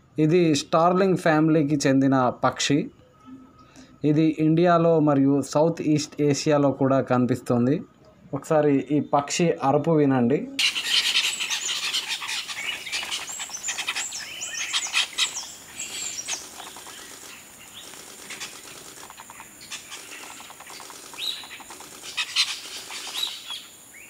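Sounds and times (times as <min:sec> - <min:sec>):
flock of starlings chirping: 0:10.6 - 0:24.0.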